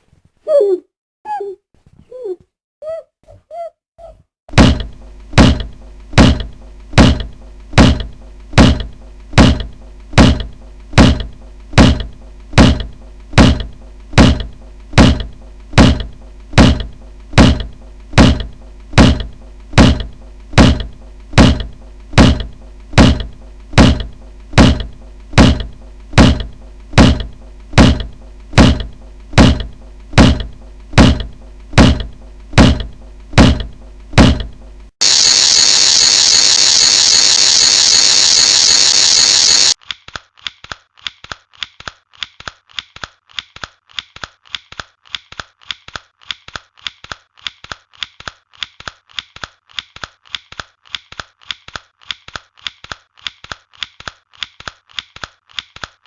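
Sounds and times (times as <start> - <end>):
loud knocks: 4.5 - 39.7
steady low hum: 4.5 - 39.8.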